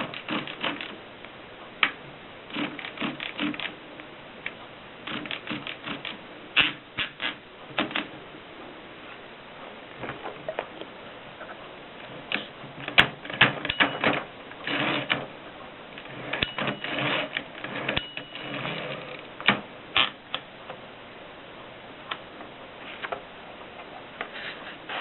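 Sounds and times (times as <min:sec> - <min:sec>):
typewriter mechanism rattling: 0:00.0 - 0:01.0, 0:02.5 - 0:03.8, 0:05.1 - 0:08.1, 0:12.3 - 0:15.3, 0:16.0 - 0:20.1
typewriter type bars clacking: 0:00.0 - 0:01.0, 0:02.5 - 0:03.8, 0:05.1 - 0:08.1, 0:12.3 - 0:15.3, 0:16.0 - 0:20.1.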